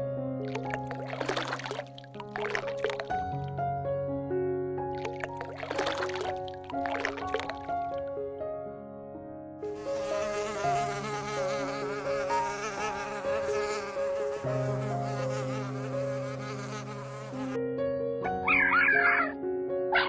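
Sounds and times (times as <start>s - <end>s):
insect buzzing in flight: 9.7s - 17.6s.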